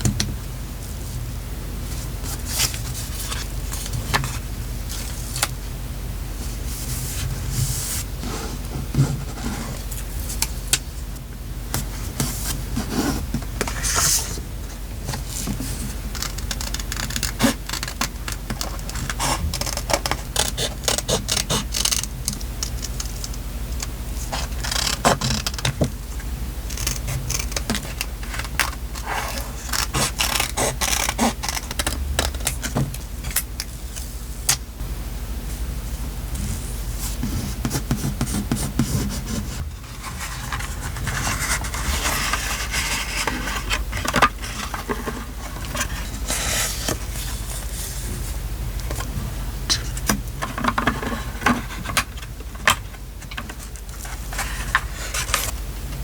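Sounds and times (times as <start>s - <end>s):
steady low hum: 0.0s - 56.0s
paper rustling and crinkling: 36.5s - 49.2s, 49.8s - 55.6s.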